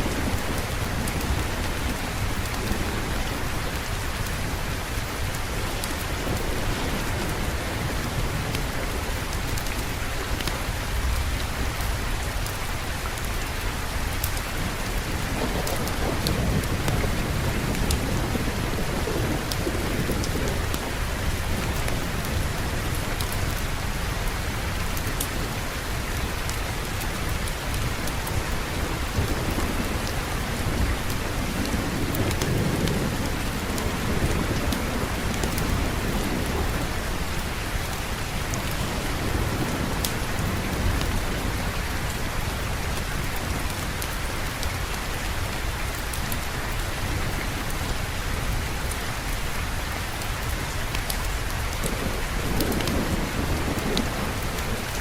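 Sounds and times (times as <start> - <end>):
heavy rain: 0.0 - 55.0
rolling thunder: 14.6 - 23.7, 27.8 - 44.0, 51.3 - 55.0.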